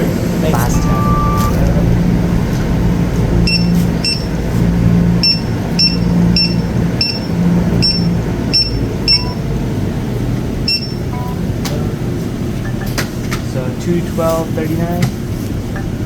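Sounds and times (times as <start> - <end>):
barcode scanner beeping: 0.4 - 2.8, 5.2 - 9.4.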